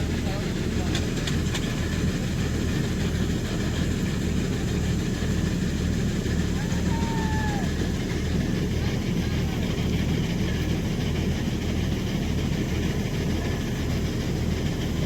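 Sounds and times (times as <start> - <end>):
tractor engine droning: 0.0 - 15.0.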